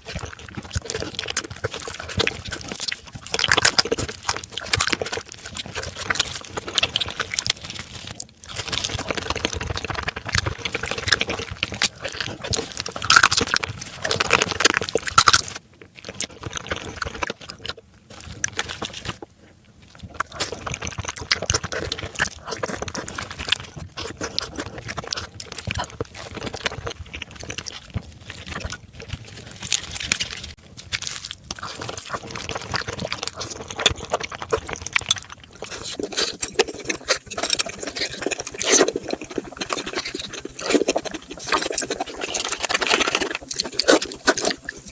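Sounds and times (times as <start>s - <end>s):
chewing and crunching: 0.0s - 44.9s
wet sucking and slurping: 31.4s - 44.9s.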